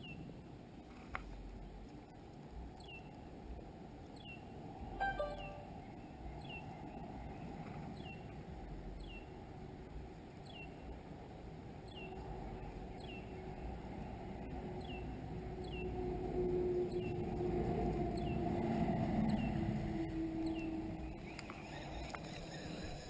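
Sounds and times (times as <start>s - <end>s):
bird high downward-sliding call: 5.0s - 5.7s.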